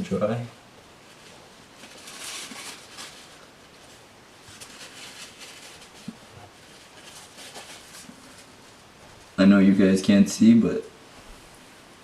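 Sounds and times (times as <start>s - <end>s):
paper towel rubbing: 1.0s - 9.4s.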